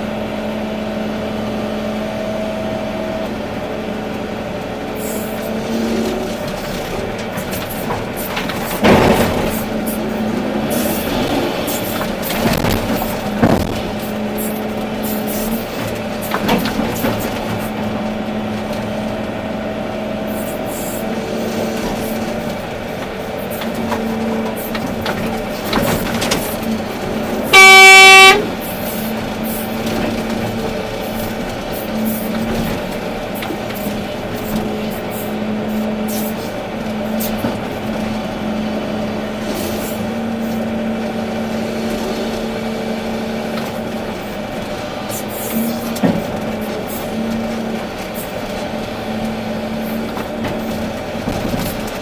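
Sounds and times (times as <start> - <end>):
excavator diesel engine running: 0.0 - 52.0
horn blast: 27.5 - 28.7.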